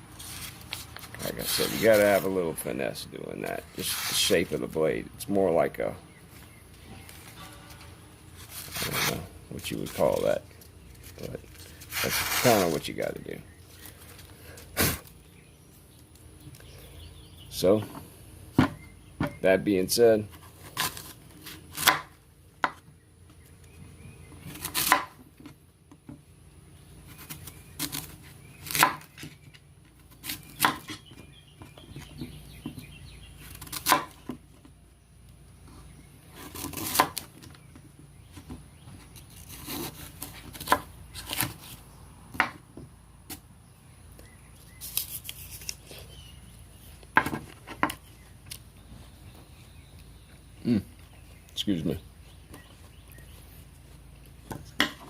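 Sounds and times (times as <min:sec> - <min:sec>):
knife cutting strokes: 0:08.4 - 0:09.3.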